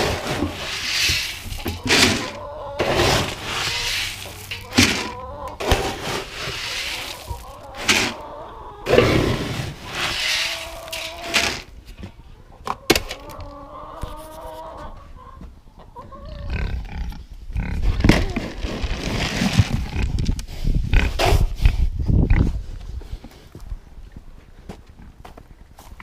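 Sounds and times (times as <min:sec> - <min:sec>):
rustling and knocking: 0:00.0 - 0:08.2, 0:08.9 - 0:12.2
farm animals calling: 0:00.0 - 0:17.9.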